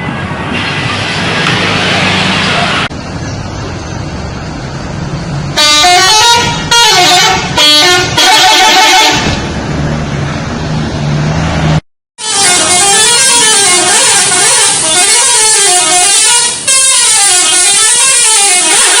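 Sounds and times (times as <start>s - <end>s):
engine humming: 0.0s - 19.0s
musical bus horn: 5.5s - 9.5s, 12.2s - 19.0s.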